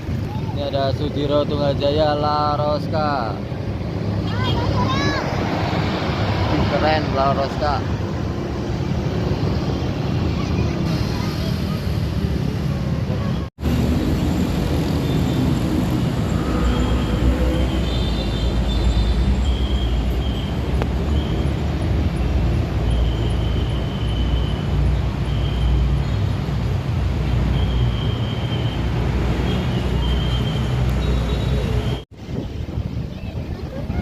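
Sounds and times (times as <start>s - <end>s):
bus engine rumble: 3.4s - 27.6s.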